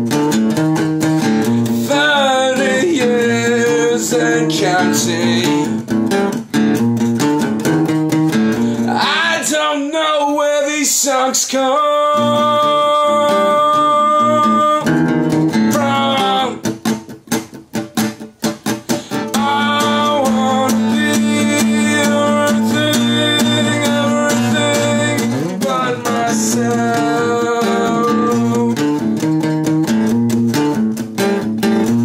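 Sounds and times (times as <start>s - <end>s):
strummed acoustic guitar: 0.0s - 32.0s
person singing: 1.5s - 5.9s, 8.6s - 16.8s, 18.9s - 29.4s.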